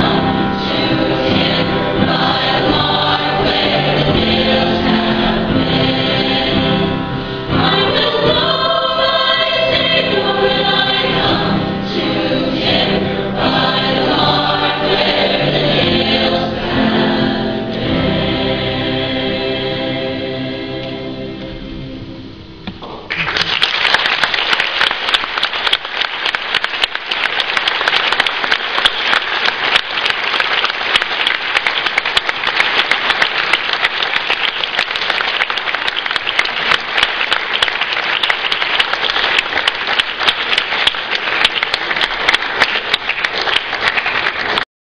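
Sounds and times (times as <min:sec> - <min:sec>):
audience applause: 0:22.8 - 0:44.7.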